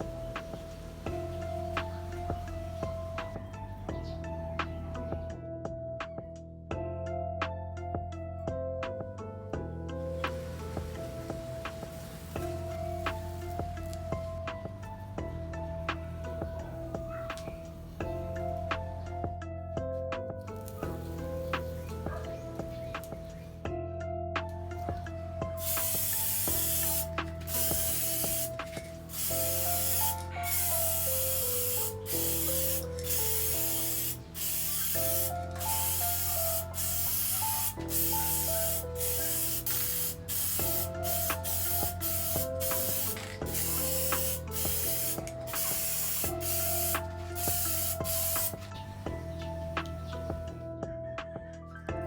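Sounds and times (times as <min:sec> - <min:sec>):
spray paint hissing: 0:10.2 - 0:17.8, 0:25.5 - 0:49.2.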